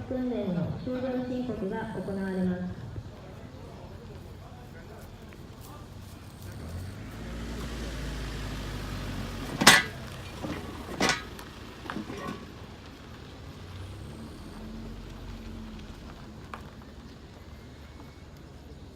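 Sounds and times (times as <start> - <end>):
light clatters: 9.3 - 13.7.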